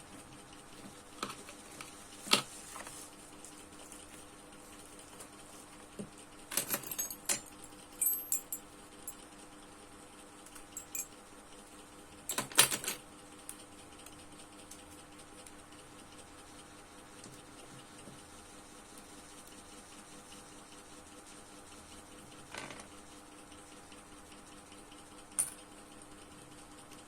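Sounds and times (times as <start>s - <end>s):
metal objects clinking: 6.5s - 8.6s, 10.8s - 11.1s.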